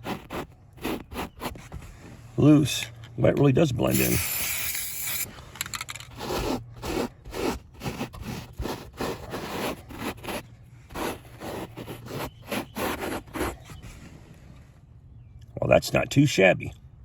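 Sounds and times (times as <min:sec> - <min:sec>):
brush scrubbing carpet: 0:06.2 - 0:13.6.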